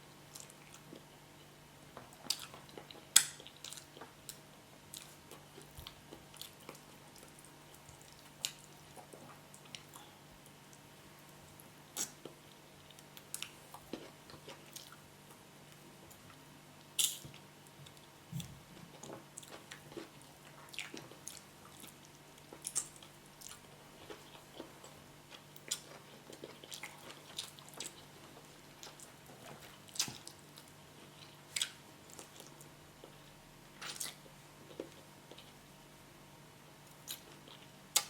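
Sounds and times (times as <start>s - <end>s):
person chewing with mouth sounds: 17.8s - 35.6s.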